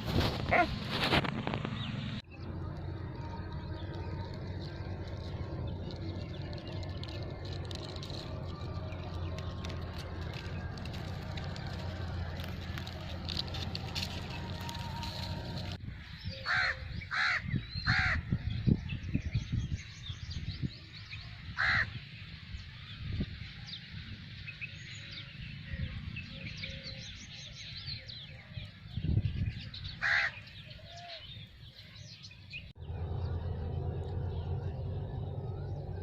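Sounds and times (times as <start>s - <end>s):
low rumbling bumps: 0.0s - 15.8s, 32.7s - 36.0s
crows cawing: 16.4s - 18.2s, 21.6s - 22.0s, 30.0s - 30.4s
steady low machine hum: 32.8s - 36.0s.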